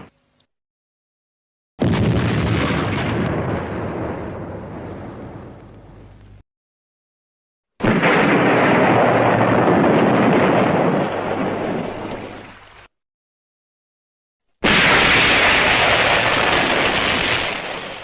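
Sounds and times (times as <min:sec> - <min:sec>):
explosion rumbling: 0:01.8 - 0:06.2, 0:07.8 - 0:12.4, 0:14.6 - 0:18.0.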